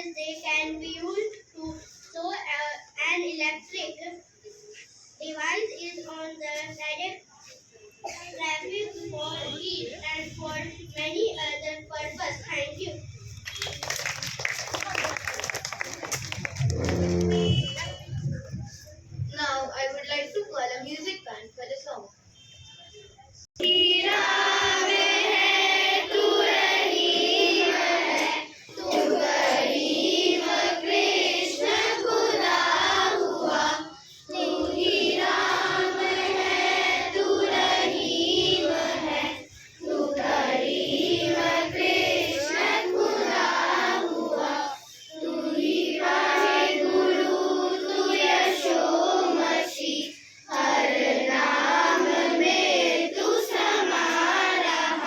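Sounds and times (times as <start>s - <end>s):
children singing: 23.6s - 55.0s.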